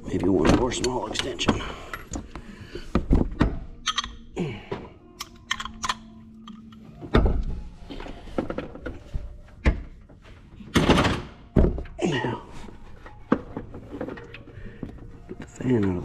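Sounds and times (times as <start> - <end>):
metal hand tools clicking: 3.8 - 4.2, 5.2 - 6.8.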